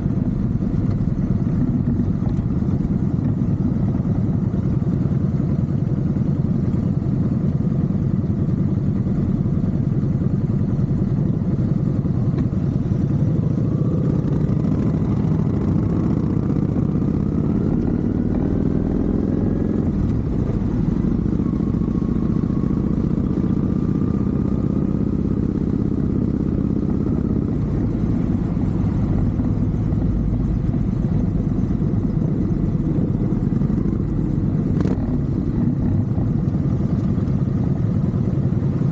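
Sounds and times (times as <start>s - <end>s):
motorcycle engine revving: 10.3s - 38.9s.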